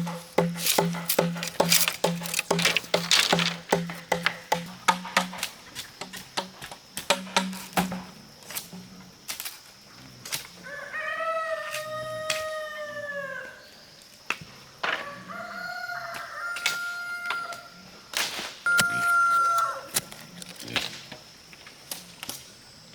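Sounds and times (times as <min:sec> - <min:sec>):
sharp knocks: 0:00.0 - 0:08.1
rooster crowing: 0:10.6 - 0:13.7, 0:14.9 - 0:17.8, 0:18.7 - 0:20.0.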